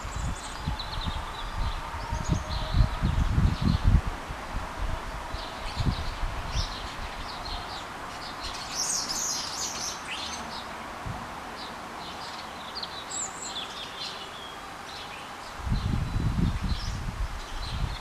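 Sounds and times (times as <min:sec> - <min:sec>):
wind buffeting microphone: 0:00.0 - 0:08.6, 0:15.5 - 0:18.0.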